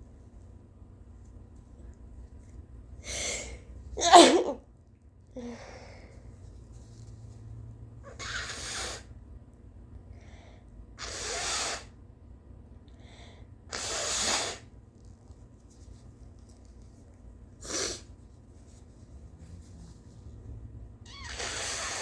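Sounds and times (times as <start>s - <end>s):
woman sneezing: 4.0s - 4.6s.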